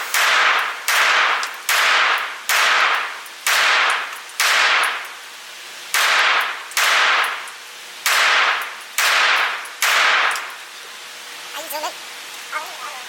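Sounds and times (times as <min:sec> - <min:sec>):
pistol shots with echo: 0:00.1 - 0:05.1, 0:05.9 - 0:10.6.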